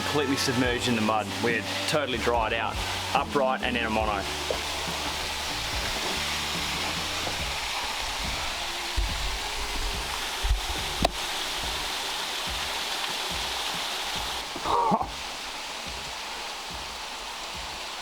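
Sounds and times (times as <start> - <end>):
waterfall rushing: 0.0 - 18.0
low thumps: 2.3 - 11.9.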